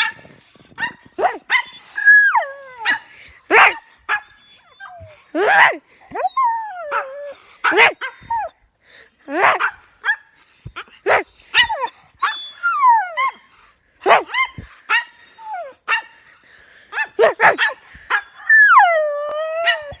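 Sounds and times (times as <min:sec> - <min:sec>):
dog barking: 0:00.8 - 0:01.7, 0:02.8 - 0:04.2, 0:05.4 - 0:05.8, 0:07.7 - 0:08.1, 0:09.3 - 0:10.2, 0:11.0 - 0:11.9, 0:14.0 - 0:15.1, 0:17.0 - 0:18.2
dog whining and yowling: 0:00.8 - 0:08.6, 0:09.3 - 0:09.7, 0:11.0 - 0:16.0, 0:17.2 - 0:20.0.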